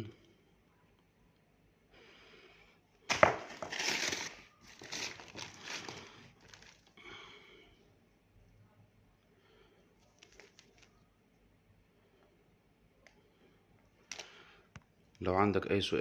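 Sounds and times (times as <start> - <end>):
crinkling and rustling: 3.1 - 7.0, 10.0 - 11.0.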